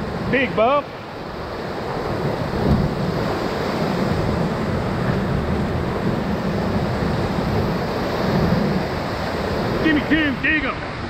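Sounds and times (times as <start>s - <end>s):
whitewater rushing: 0.0s - 11.0s.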